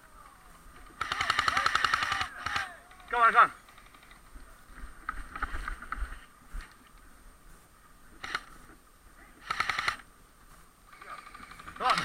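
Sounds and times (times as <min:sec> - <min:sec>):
rapid full-auto airsoft burst: 0:01.0 - 0:02.7, 0:09.4 - 0:10.0.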